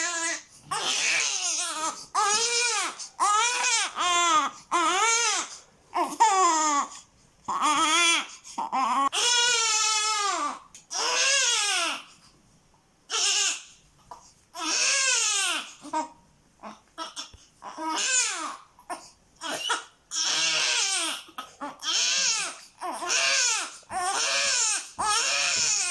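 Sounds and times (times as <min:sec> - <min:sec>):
newborn baby crying: 0:00.0 - 0:12.2, 0:13.1 - 0:25.9.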